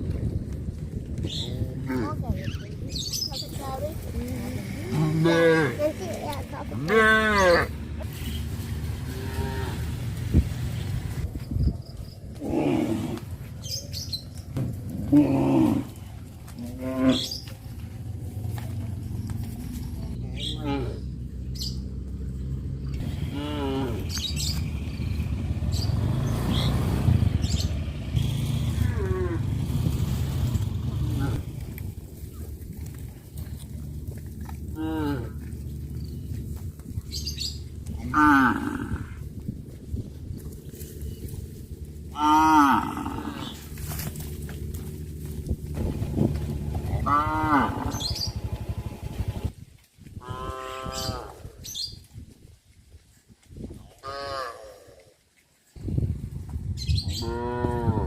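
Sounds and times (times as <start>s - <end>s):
birds chirping: 1.0s - 49.5s, 56.7s - 57.7s
low hum: 3.5s - 49.6s
cows mooing: 4.6s - 6.1s, 6.8s - 7.8s, 9.0s - 10.2s, 14.9s - 17.5s, 20.4s - 21.1s, 23.0s - 24.2s, 28.2s - 31.6s, 34.7s - 35.6s, 37.9s - 39.2s, 42.1s - 44.0s, 46.7s - 49.3s, 50.2s - 51.4s, 54.0s - 55.0s, 57.2s - 58.0s
motor humming: 45.4s - 49.5s.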